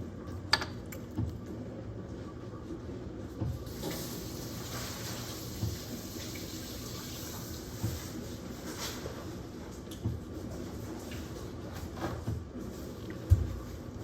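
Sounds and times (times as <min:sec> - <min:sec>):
liquid running in a stream: 0:03.7 - 0:08.6.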